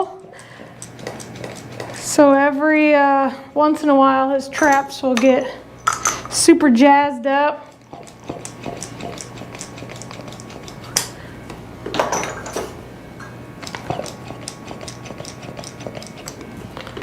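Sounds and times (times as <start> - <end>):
cups clicking and clinking: 4.6 - 6.4, 10.9 - 17.0.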